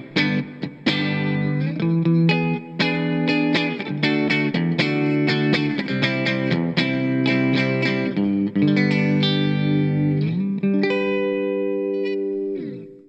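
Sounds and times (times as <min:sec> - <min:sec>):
electric guitar chords strummed: 0:00.0 - 0:13.0.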